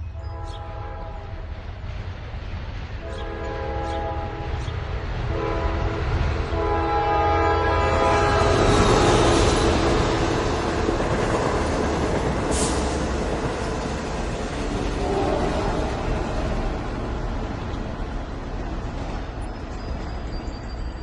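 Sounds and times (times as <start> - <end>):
train passing with rushing rumble: 0.0 - 21.0
train horn blasts: 0.1 - 1.5, 3.0 - 9.4, 14.9 - 16.8.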